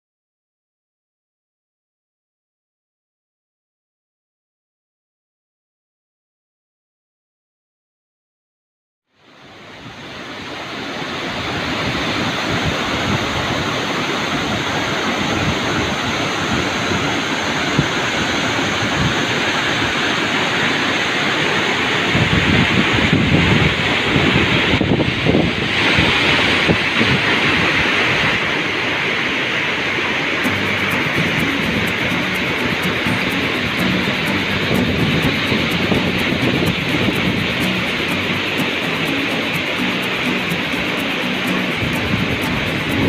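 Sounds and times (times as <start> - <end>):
waterfall rushing: 9.2 - 43.0
low rumbling gusts: 11.2 - 30.4.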